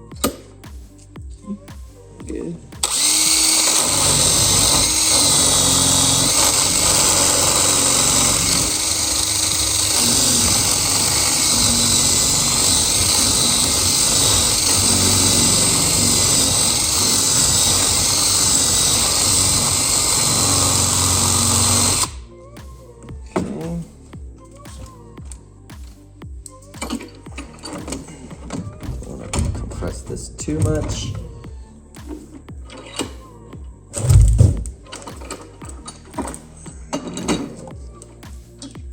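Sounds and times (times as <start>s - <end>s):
electric drill boring into metal: 2.8s - 22.2s.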